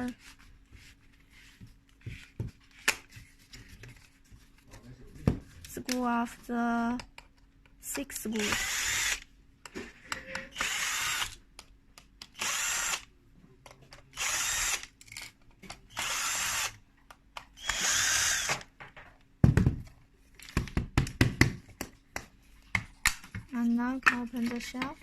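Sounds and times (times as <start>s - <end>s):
electric screwdriver whirring: 8.4s - 9.2s, 10.5s - 11.4s, 12.3s - 13.1s, 14.2s - 14.9s, 15.9s - 16.7s, 17.6s - 18.7s.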